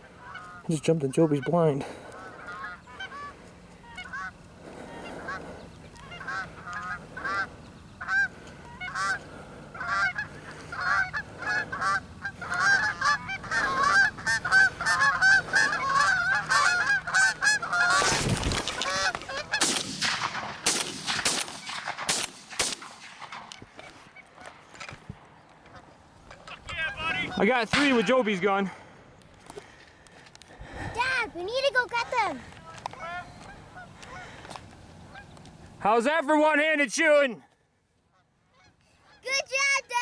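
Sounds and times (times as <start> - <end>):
geese honking: 0.0 - 24.8, 25.6 - 28.8, 32.4 - 35.4, 38.1 - 39.4
shotgun blasts: 17.9 - 23.6.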